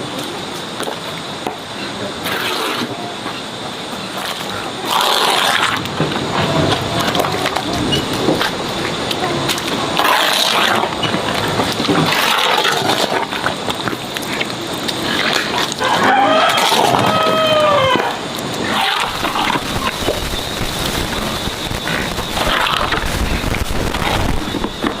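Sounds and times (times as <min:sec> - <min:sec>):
animals rustling and chomping: 0:00.1 - 0:25.0
animal calling: 0:14.2 - 0:25.0.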